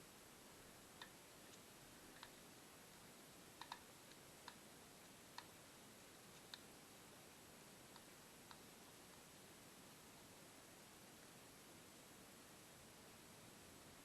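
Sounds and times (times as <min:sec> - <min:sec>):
steady hiss: 0:00.0 - 0:14.0
small clicks and taps: 0:01.0 - 0:02.4, 0:03.6 - 0:04.6.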